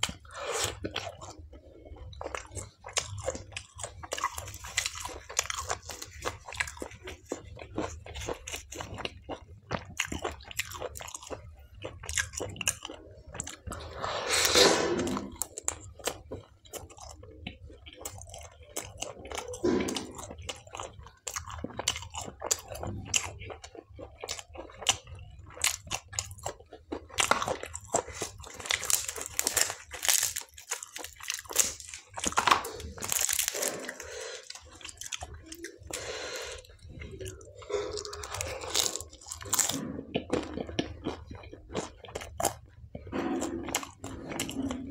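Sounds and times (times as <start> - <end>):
person chewing food: 0.0 - 44.9
crunching bites: 27.1 - 35.3, 37.9 - 42.6.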